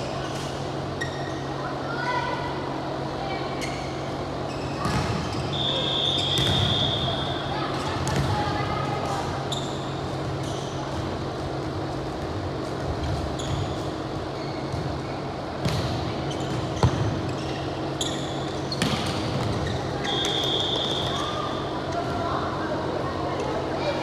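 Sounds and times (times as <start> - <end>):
sneaker squeaks on floor: 0.0 - 1.6, 3.6 - 7.4, 9.4 - 11.4, 12.5 - 22.3
steady hum: 5.0 - 16.3
volleyball hits: 6.2 - 6.9.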